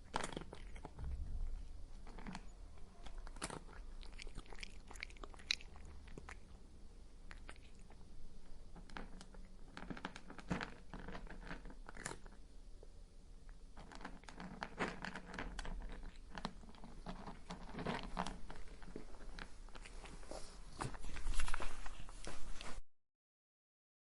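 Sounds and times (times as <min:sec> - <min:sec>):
cat crunching dry kibble: 0:00.0 - 0:06.6, 0:07.3 - 0:12.4, 0:13.7 - 0:20.2.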